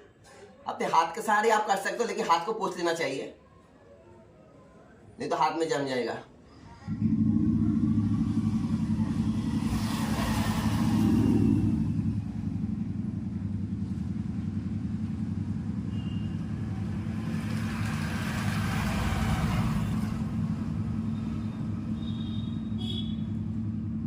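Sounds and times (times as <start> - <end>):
vehicles passing: 6.5 - 24.0
road traffic engine hum: 6.6 - 24.0.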